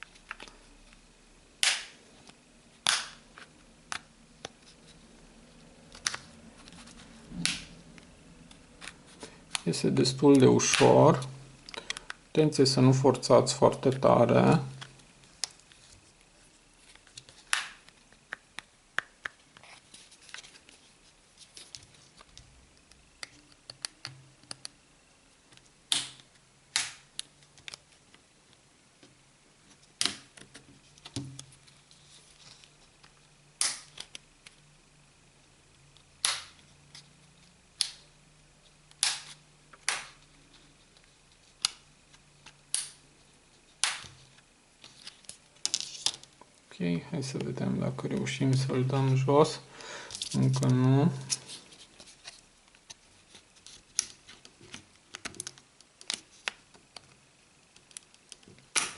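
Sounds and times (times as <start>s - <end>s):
plastic clips snapping: 1.6s - 2.0s, 2.8s - 3.2s, 33.6s - 34.2s, 36.2s - 36.6s, 38.9s - 40.2s, 42.4s - 43.0s.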